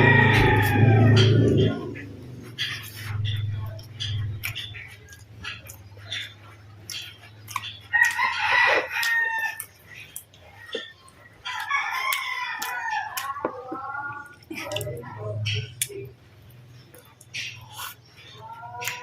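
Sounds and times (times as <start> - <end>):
rooster crowing: 0.0 - 2.0, 7.9 - 9.7
chewing and mouth clicks: 2.5 - 19.0.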